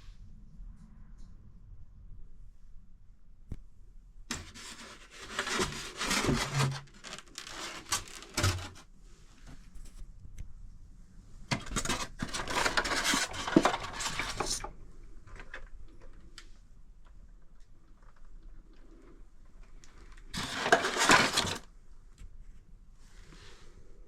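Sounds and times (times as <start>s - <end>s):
cardboard box rustling: 4.3s - 8.8s, 11.5s - 14.6s, 20.4s - 21.6s.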